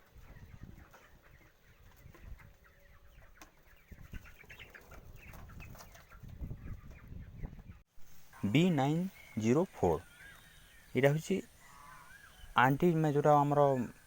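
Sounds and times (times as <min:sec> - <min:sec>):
chickens rattling breathing: 0:00.0 - 0:07.2, 0:09.9 - 0:12.7
chickens clucking and chirping: 0:00.0 - 0:14.0.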